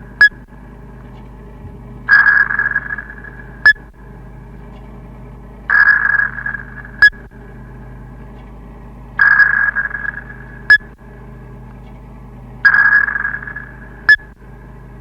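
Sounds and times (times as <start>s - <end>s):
steady low hum: 0.0s - 15.0s
sonar ping: 0.1s - 0.5s, 2.0s - 4.0s, 5.7s - 7.3s, 9.2s - 11.0s, 12.6s - 14.4s.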